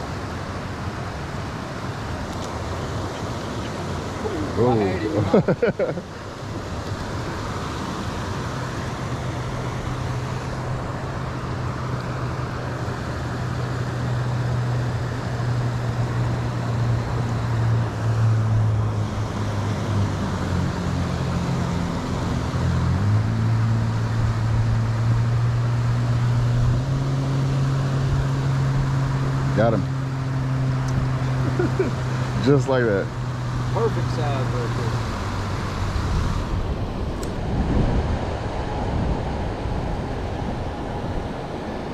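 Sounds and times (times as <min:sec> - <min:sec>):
low engine hum: 0:00.0 - 0:41.9
traffic hiss: 0:31.0 - 0:37.9.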